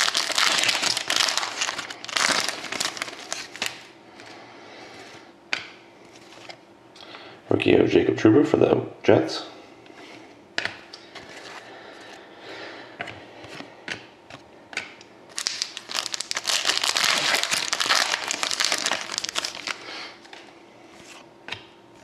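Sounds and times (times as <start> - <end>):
wrapper crinkling: 0.0 - 3.9, 15.3 - 20.3.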